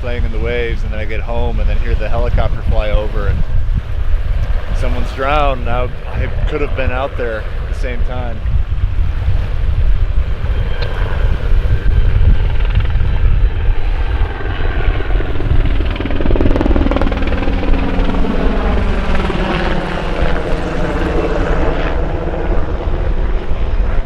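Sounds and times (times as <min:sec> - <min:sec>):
helicopter engine whine: 0:00.0 - 0:24.0
helicopter rotor blades thudding: 0:10.2 - 0:24.0.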